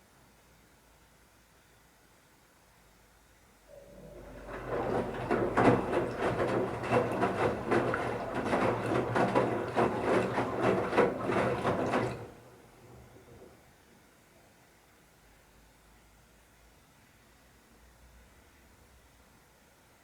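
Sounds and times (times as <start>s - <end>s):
motor hum: 3.7s - 13.6s
washing machine drum tumbling: 3.8s - 13.6s
water sloshing: 3.9s - 13.6s.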